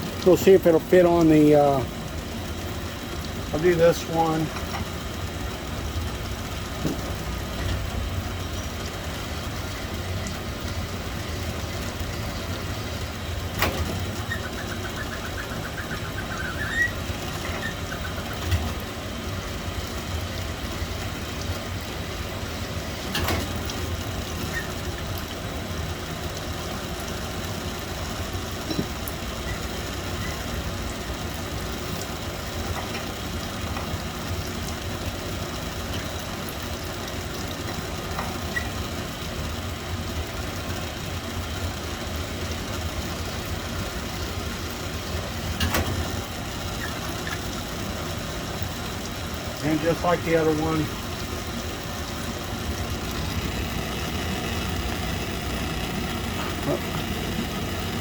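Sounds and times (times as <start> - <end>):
metal lathe humming: 52.3 - 58.0.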